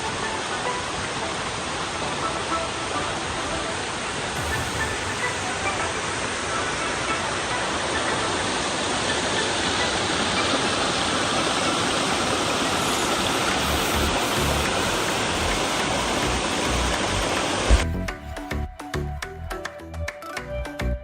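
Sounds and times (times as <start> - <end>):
waterfall roaring: 0.0 - 17.8.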